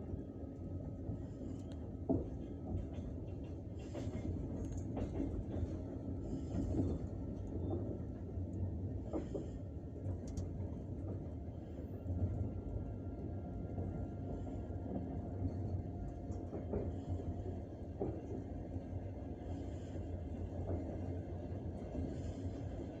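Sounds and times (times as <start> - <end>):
train carriage rumble: 0.0 - 23.0.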